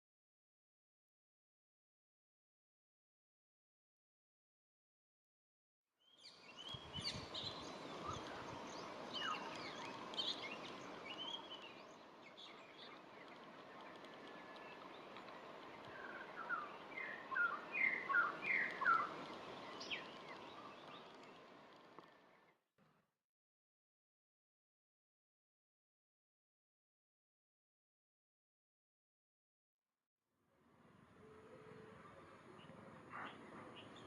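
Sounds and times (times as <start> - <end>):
wild birds chirping: 6.0 - 22.5, 31.2 - 34.0.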